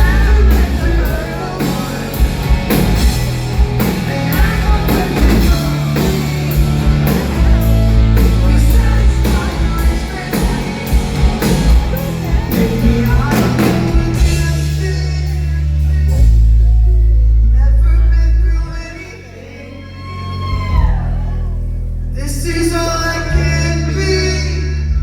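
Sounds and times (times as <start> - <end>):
rock band playing: 0.0 - 17.6
person singing: 0.0 - 25.0.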